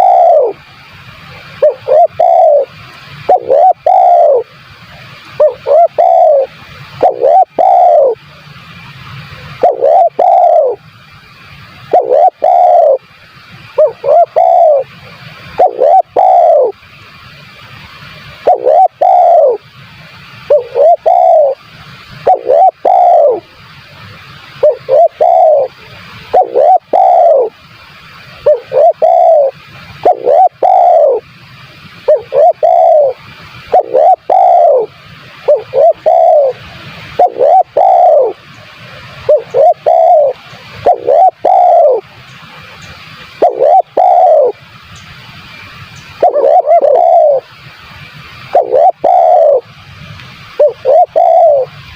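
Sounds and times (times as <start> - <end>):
dove cooing: 0.0 - 0.7, 1.6 - 4.5, 5.3 - 8.2, 9.6 - 10.8, 11.9 - 13.1, 13.8 - 14.9, 15.5 - 16.8, 18.4 - 19.6, 20.5 - 21.6, 22.2 - 23.5, 24.6 - 27.6, 28.3 - 31.3, 32.0 - 38.6, 39.2 - 42.1, 43.2 - 44.6, 46.1 - 47.6, 48.4 - 49.7, 50.6 - 51.8
steady hiss: 0.0 - 51.9.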